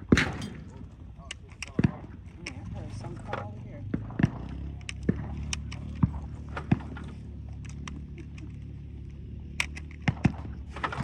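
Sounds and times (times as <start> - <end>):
sharp clicks and knocks: 0.0 - 2.7
steady low rumble: 0.0 - 3.2.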